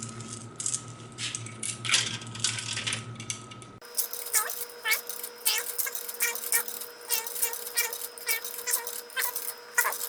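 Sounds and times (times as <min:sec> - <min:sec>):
coins clinking through vending machine: 0:03.8 - 0:10.0.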